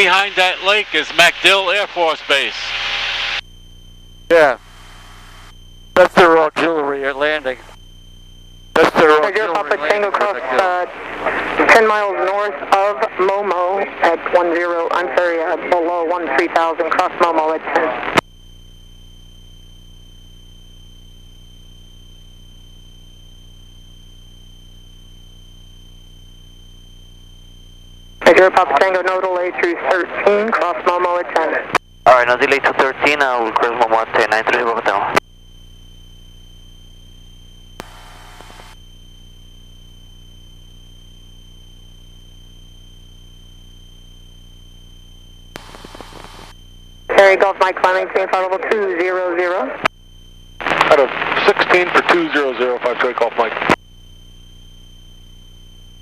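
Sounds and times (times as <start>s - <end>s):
faint radio hiss: 0.0s - 2.7s, 4.3s - 7.8s, 28.2s - 35.2s, 37.8s - 38.8s, 45.6s - 46.5s, 50.6s - 53.8s
aircraft engine drone: 0.0s - 17.4s
high-pitched electrical whine: 0.0s - 56.0s
radio click: 37.8s - 38.8s, 45.6s - 46.6s.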